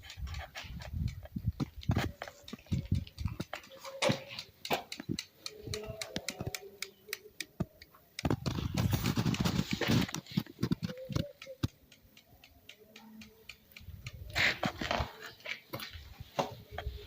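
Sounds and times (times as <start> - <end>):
rustling noise: 0.0 - 4.4, 8.3 - 11.3
clicks and knocks of handling: 0.0 - 17.0.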